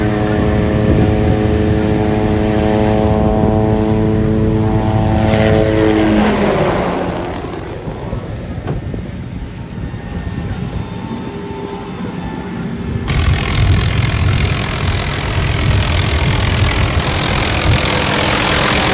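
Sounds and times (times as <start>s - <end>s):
helicopter engine and rotor: 0.0s - 18.9s
rising hiss: 13.1s - 18.9s.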